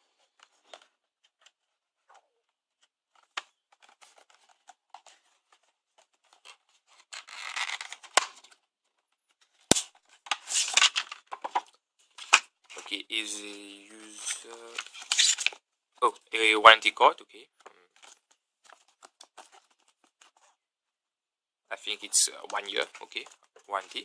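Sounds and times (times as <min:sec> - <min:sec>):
packaging tearing: 0:07.1 - 0:08.2, 0:09.7 - 0:11.2, 0:14.1 - 0:15.6
packaging rustling: 0:09.4 - 0:12.9, 0:14.0 - 0:15.6, 0:17.8 - 0:20.6.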